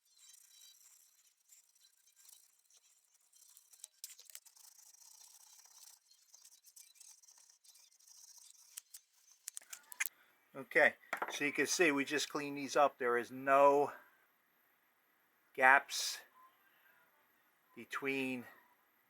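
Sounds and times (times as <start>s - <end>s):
sandpaper rubbing on steel: 0.0s - 9.5s.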